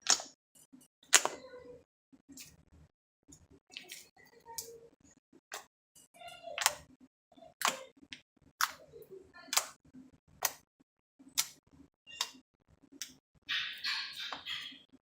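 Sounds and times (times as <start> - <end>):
slime squelching: 1.1 - 1.4, 6.5 - 6.8.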